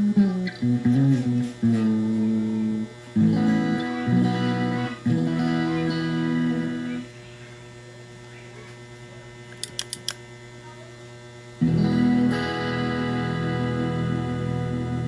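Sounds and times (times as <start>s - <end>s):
electric guitar playing: 0.0s - 7.1s, 11.6s - 15.0s
electrical mains hum: 0.0s - 15.0s
quick clicks: 9.5s - 10.2s.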